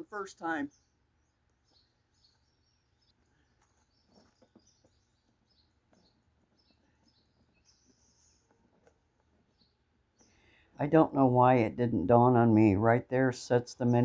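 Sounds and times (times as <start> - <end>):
birds chirping: 0.0 - 14.0.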